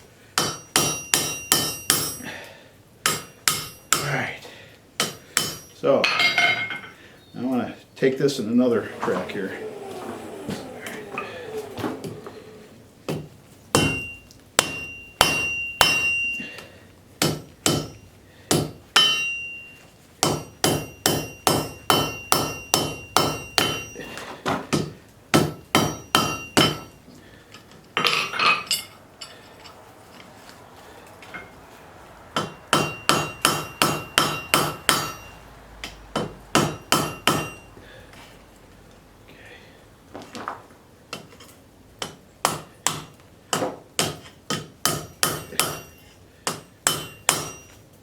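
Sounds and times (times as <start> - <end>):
hammer striking metal on anvil: 0.4 - 2.2, 3.0 - 4.1, 5.0 - 6.8, 13.8 - 16.4, 17.2 - 24.0, 24.7 - 27.0, 32.4 - 37.7, 42.0 - 47.8.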